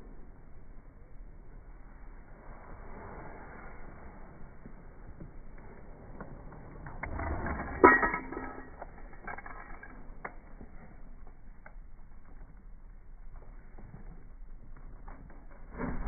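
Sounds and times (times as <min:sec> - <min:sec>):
metal tools clanking and scraping: 0:07.0 - 0:10.4.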